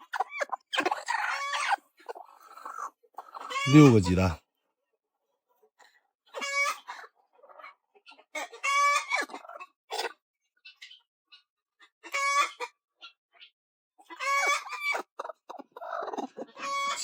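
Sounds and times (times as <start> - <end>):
chickens clucking softly: 0.1 - 4.4, 14.0 - 17.0.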